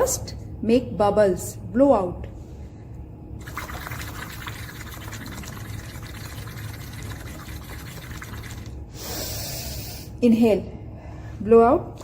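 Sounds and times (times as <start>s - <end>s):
water bubbling through a straw: 3.4s - 8.8s.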